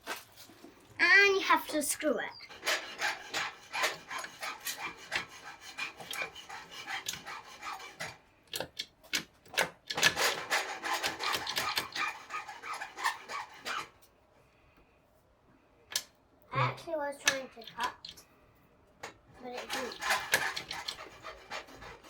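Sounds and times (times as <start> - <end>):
hand tool rasping and scraping: 2.4 - 8.2, 9.9 - 14.0, 19.4 - 22.0.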